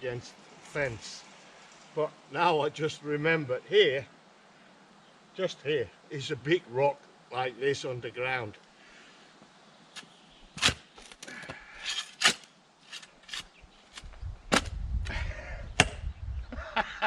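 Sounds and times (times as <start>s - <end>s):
spade digging stony soil: 10.0s - 14.7s.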